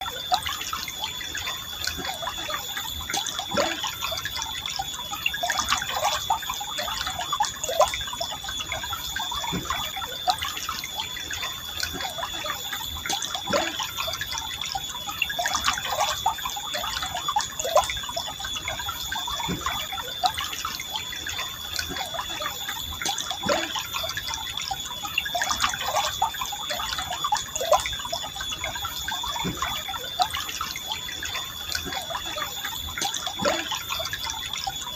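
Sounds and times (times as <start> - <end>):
stream trickling and gurgling: 0.0 - 34.9
thin high-pitched tone: 0.0 - 34.9.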